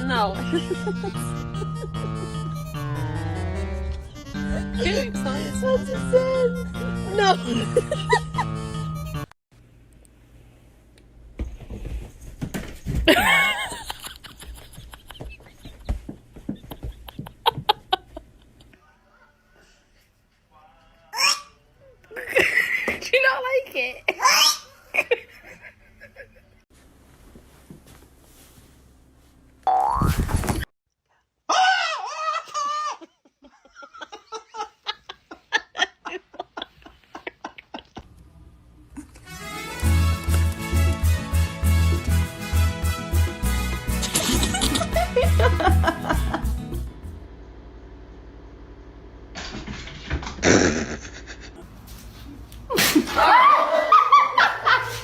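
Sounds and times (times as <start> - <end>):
person laughing: 0.4 - 3.3, 4.3 - 5.3, 6.2 - 9.1, 13.1 - 18.8, 24.8 - 26.6, 31.6 - 38.0, 43.9 - 46.9, 50.4 - 51.6.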